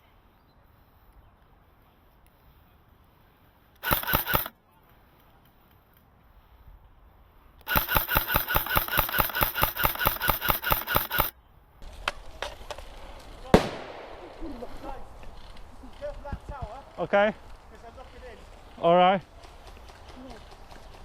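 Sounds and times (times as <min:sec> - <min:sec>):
airsoft rifle firing bursts: 0:03.8 - 0:04.5, 0:07.6 - 0:11.3.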